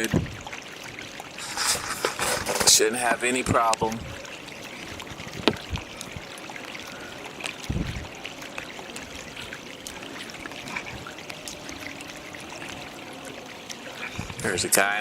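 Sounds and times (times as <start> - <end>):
water dripping off paddles: 0.0 - 15.0
water splashing around hull: 0.0 - 15.0.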